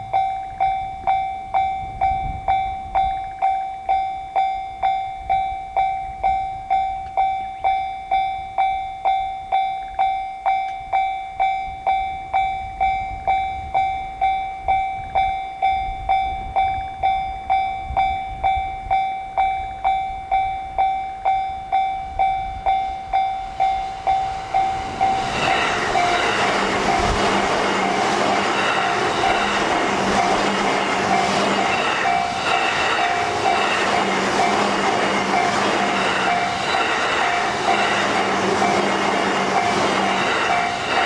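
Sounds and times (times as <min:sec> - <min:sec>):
level-crossing warning bell: 0:00.0 - 0:41.0
electric train passing: 0:10.8 - 0:41.0
train wheel clatter: 0:22.2 - 0:41.0.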